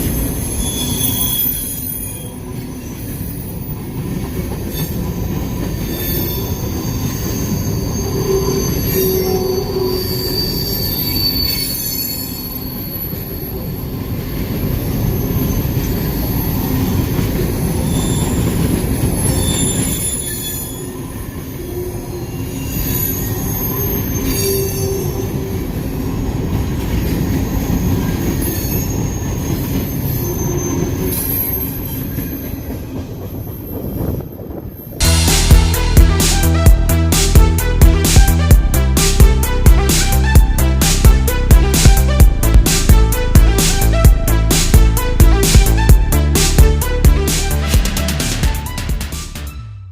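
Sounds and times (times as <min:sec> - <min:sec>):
freight train cars rumbling: 0:00.0 - 0:49.6
high-pitched wheel squeal: 0:00.4 - 0:03.5, 0:05.8 - 0:13.6, 0:19.2 - 0:25.4.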